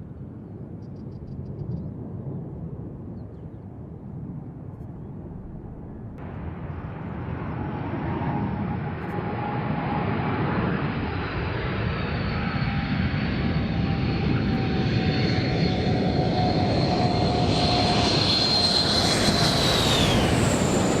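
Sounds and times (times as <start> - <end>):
jet engines whining: 5.7 - 21.0.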